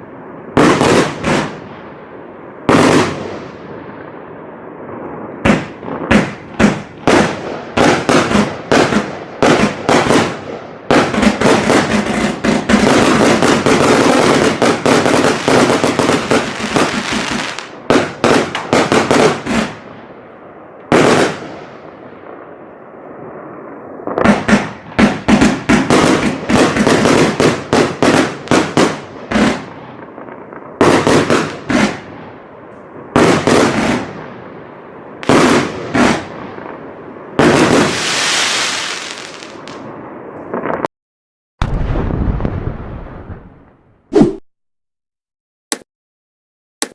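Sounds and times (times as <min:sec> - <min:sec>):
firework battery shots: 0:05.4 - 0:19.8, 0:24.1 - 0:32.1.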